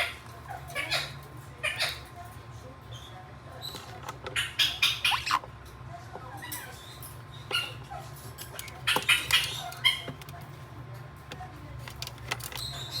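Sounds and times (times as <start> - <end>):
parrots squawking and squeaking: 0.0 - 2.1, 2.9 - 5.6, 6.2 - 10.2.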